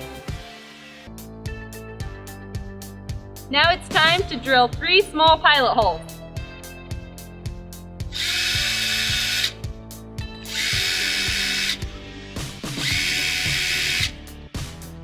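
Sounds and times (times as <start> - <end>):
background music with beat: 0.0 - 15.0
power drill whining: 8.1 - 9.6, 10.4 - 11.8, 12.8 - 14.2.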